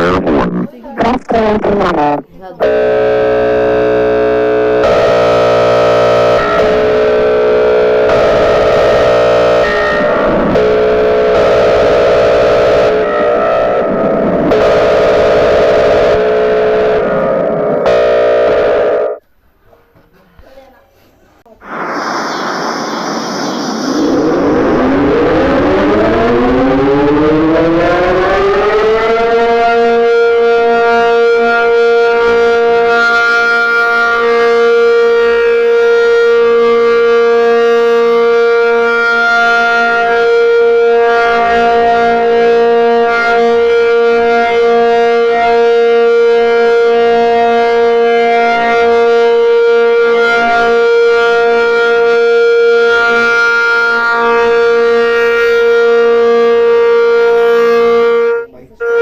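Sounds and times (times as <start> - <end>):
outdoor warning siren: 2.6 - 19.2, 21.6 - 59.0.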